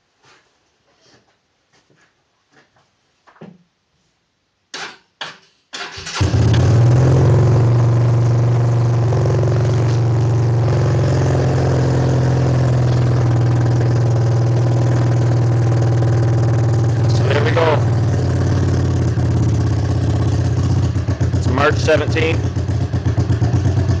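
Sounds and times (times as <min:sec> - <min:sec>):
motorcycle engine starting and idling: 0:05.8 - 0:24.0.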